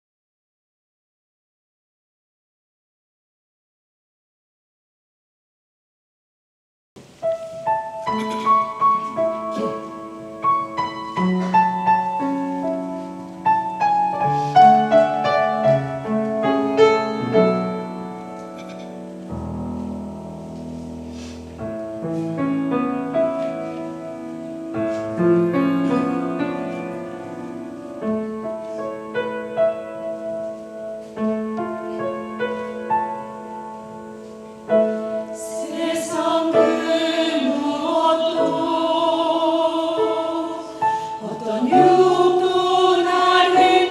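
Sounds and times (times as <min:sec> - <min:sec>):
piano playing: 0:07.1 - 0:43.9
choir singing a hymn: 0:34.8 - 0:43.9.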